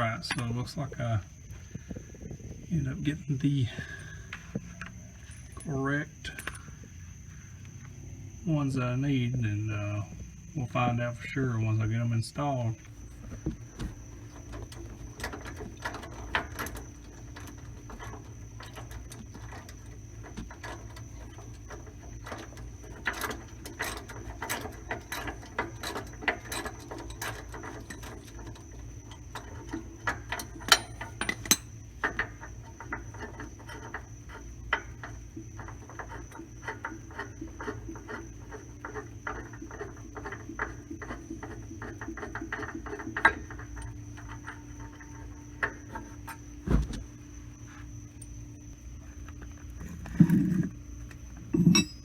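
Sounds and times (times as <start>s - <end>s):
sharp metal clanks: 29.6s - 32.3s, 51.5s - 52.0s
metallic tool clinks: 51.5s - 52.0s.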